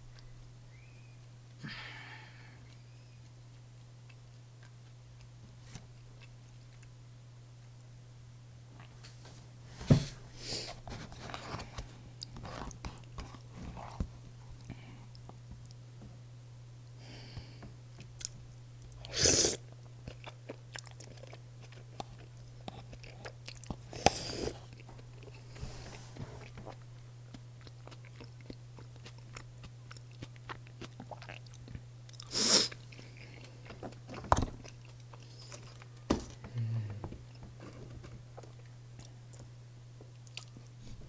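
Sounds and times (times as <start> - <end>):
low electrical hum: 0.0 - 41.0
close chewing with wet clicks: 2.6 - 5.4, 18.0 - 25.4, 26.5 - 36.0, 38.4 - 40.7.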